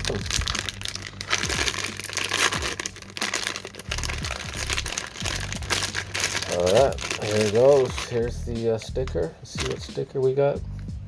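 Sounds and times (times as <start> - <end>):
plastic packaging torn open: 0.0 - 8.3.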